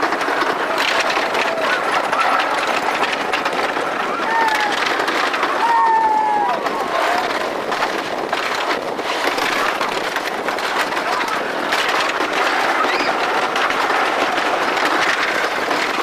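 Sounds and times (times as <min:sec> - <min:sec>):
roller coaster rattling on wooden track: 0:00.0 - 0:16.0.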